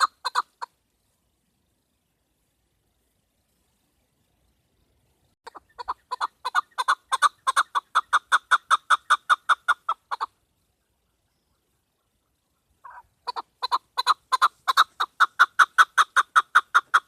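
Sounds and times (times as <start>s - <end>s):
partridge clucking call: 0.0s - 0.8s, 5.4s - 17.0s.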